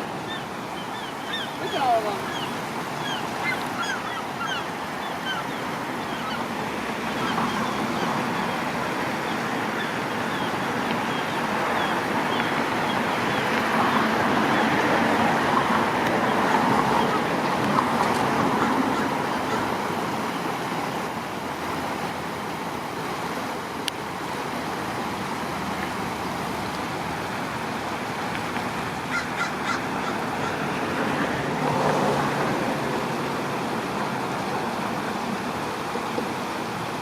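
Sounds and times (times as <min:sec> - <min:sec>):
river flowing: 0:00.0 - 0:37.0
bird calls: 0:00.2 - 0:06.5, 0:07.1 - 0:14.8, 0:16.5 - 0:19.8, 0:29.0 - 0:30.8.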